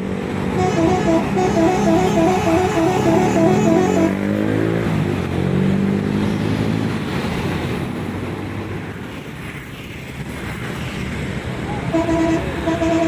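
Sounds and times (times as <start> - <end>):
bus engine passing: 0.0 - 13.0
bus horn playing warbling tune: 0.5 - 4.4, 11.9 - 13.0.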